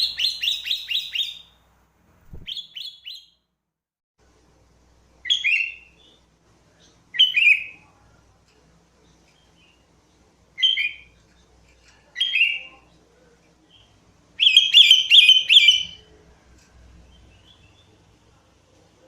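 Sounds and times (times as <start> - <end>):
bulbul singing: 0.0 - 1.6, 2.3 - 3.4.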